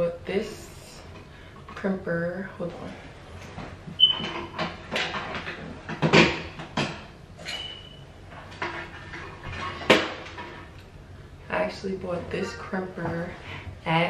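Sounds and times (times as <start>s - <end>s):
brief high squeaks: 4.0s - 4.3s, 7.5s - 8.0s
household objects knocking and clattering: 4.2s - 7.2s.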